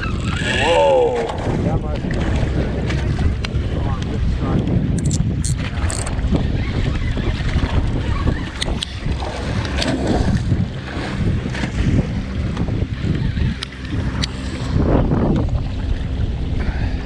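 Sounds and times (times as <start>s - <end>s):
low motor hum: 0.0s - 17.0s
wind buffeting microphone: 0.0s - 17.0s
sharp clicks and knocks: 5.0s - 6.2s.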